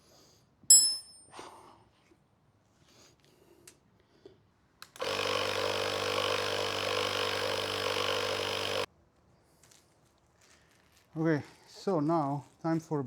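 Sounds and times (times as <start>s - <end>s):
small electric motor running: 5.0s - 8.9s.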